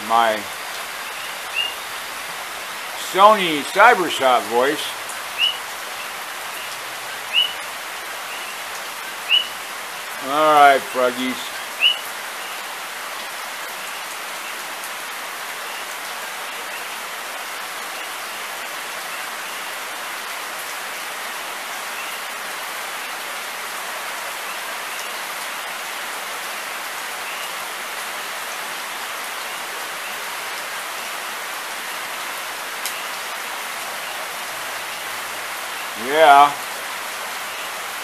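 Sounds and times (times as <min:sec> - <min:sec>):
steady rain falling: 0:00.0 - 0:38.0
frogs chirping: 0:00.1 - 0:12.8, 0:16.6 - 0:17.0, 0:17.8 - 0:19.8, 0:21.9 - 0:22.4, 0:27.2 - 0:27.7, 0:32.8 - 0:36.6.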